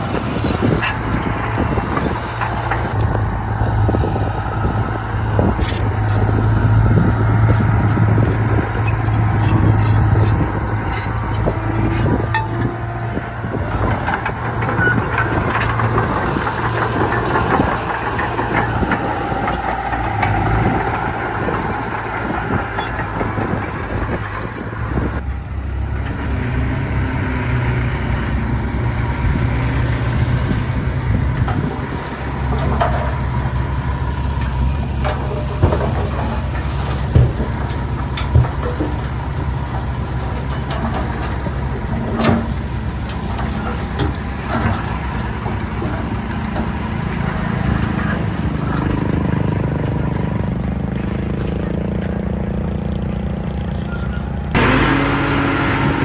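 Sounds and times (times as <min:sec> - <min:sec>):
heavy diesel engines rumbling: 0:00.0 - 0:56.0
scattered knocks: 0:31.4 - 0:52.0.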